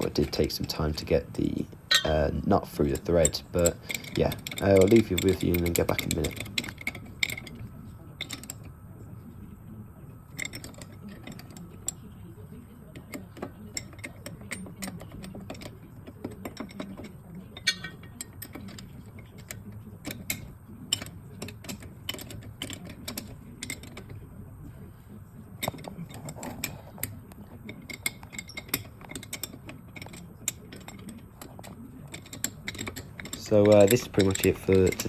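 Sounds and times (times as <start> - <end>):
ratchet clicking on bolts: 2.9 - 7.5, 13.1 - 24.2, 27.8 - 35.0.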